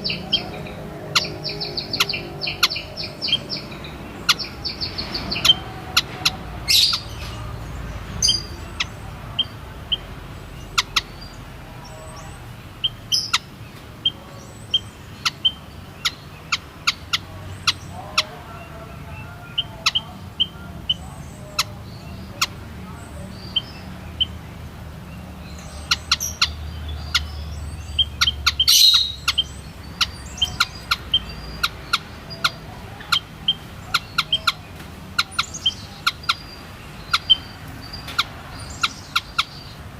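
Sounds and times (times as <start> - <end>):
birds chip calls: 0.0 - 39.9.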